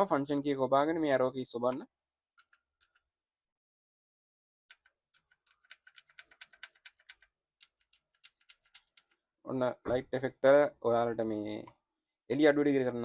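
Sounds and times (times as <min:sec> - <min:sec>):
mechanical keyboard keys clicking: 0:04.7 - 0:09.1.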